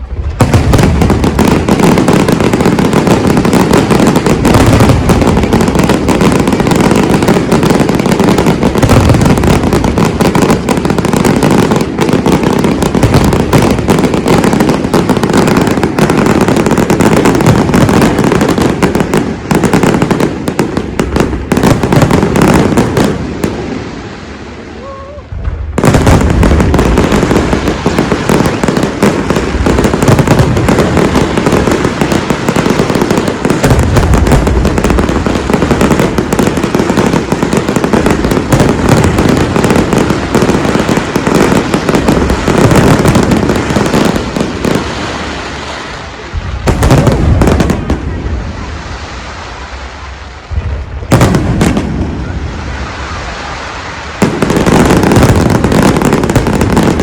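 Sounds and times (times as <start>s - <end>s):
fireworks explosions: 0.0s - 57.0s.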